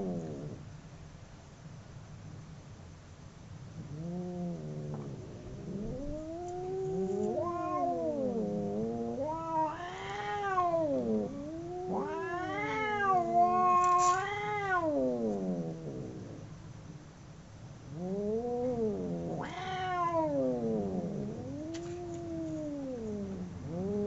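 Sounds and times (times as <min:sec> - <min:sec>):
cats caterwauling: 0:04.0 - 0:16.4, 0:17.9 - 0:24.0.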